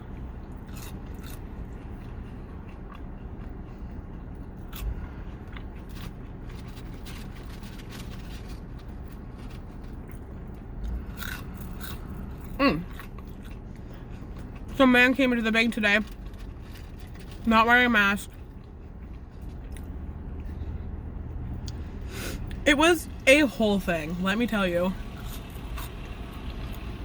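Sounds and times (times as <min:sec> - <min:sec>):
person chewing food: 0:00.0 - 0:14.8, 0:18.3 - 0:22.6
steady low hum: 0:00.0 - 0:27.0
food packaging crinkling: 0:06.0 - 0:10.3.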